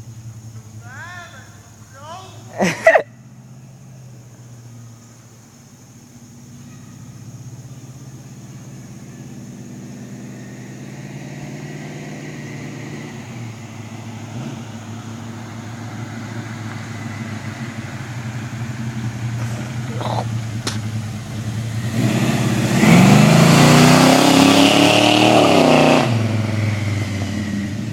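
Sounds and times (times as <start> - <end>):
car engine revving: 7.1 - 27.9.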